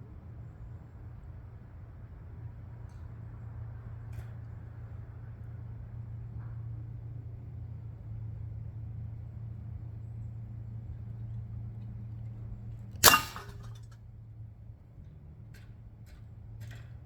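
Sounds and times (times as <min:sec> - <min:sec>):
air rifle shot: 0:13.0 - 0:13.7.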